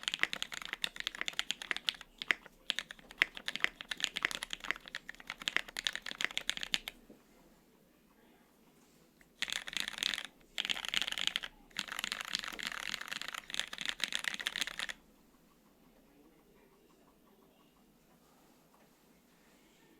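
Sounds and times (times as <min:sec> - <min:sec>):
typing on mechanical keyboard: 0:00.0 - 0:07.0, 0:09.4 - 0:15.0.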